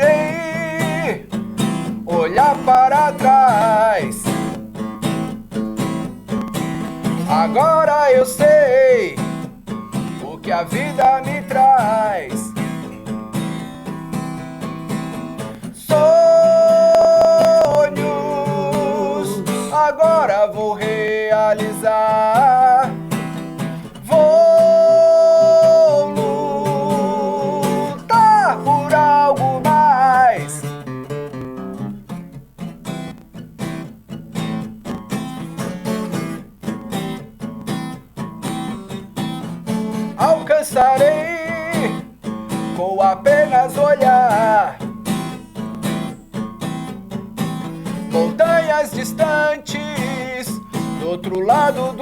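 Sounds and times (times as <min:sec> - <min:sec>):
man singing: 0:00.0 - 0:04.6, 0:06.8 - 0:13.2, 0:15.4 - 0:31.9, 0:39.7 - 0:45.2, 0:47.8 - 0:52.0
acoustic guitar strumming: 0:00.0 - 0:52.0.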